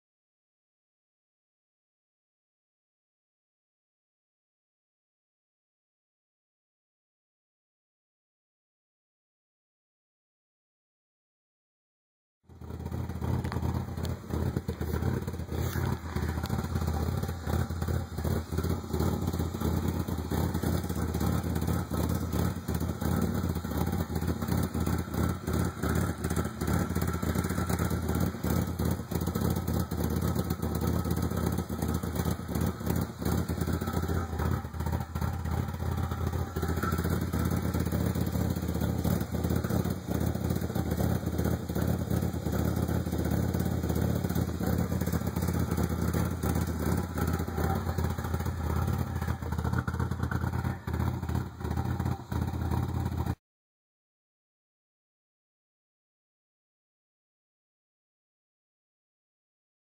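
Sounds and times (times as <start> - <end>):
car engine idling roughly: 12.5 - 53.4.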